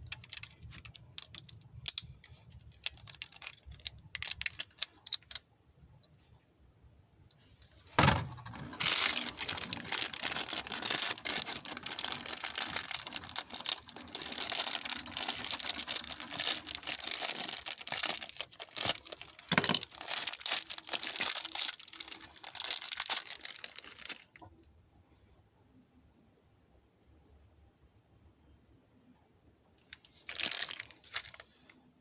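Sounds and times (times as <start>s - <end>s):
plastic packaging crinkling: 0.0s - 5.4s, 7.9s - 24.5s, 29.8s - 31.8s
thump: 8.0s - 8.3s.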